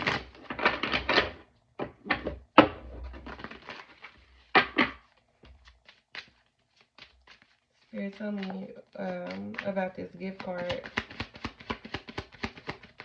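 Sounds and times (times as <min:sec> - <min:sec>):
cards being shuffled: 0:03.1 - 0:13.0.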